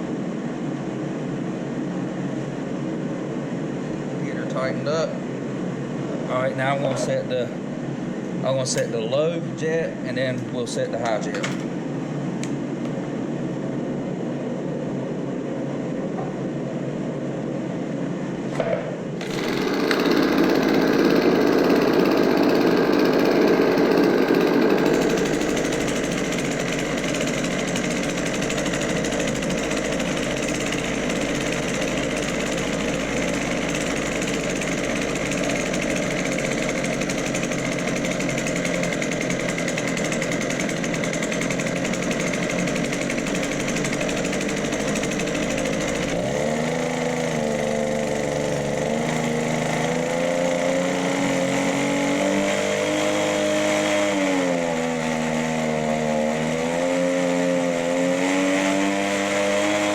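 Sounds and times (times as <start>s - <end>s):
leaf blower engine running: 19.2s - 59.9s.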